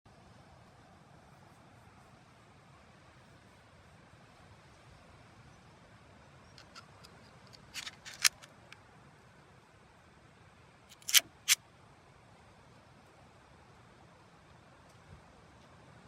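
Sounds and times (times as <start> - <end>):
pistol parts clicking: 6.6 - 8.7, 10.9 - 11.3.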